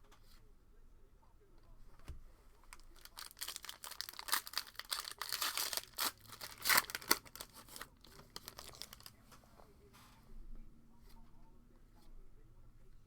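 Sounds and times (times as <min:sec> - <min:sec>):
foil wrapper crinkling and tearing: 0:02.7 - 0:09.1.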